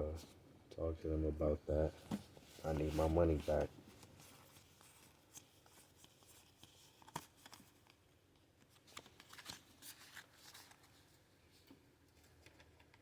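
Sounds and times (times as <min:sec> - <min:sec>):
cards and packaging rustling: 0:02.0 - 0:13.0.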